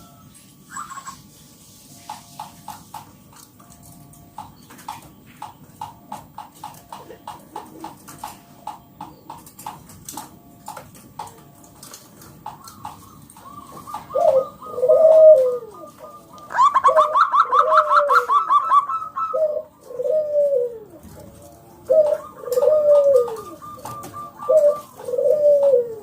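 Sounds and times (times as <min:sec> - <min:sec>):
dove cooing: 0:11.2 - 0:26.0.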